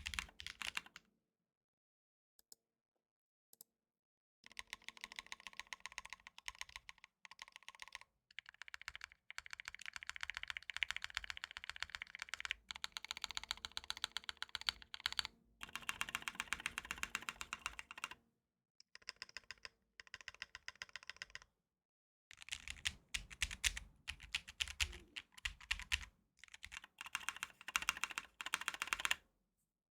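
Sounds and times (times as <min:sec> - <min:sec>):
mechanical keyboard typing: 0:00.0 - 0:01.0, 0:04.5 - 0:18.2, 0:22.4 - 0:29.2.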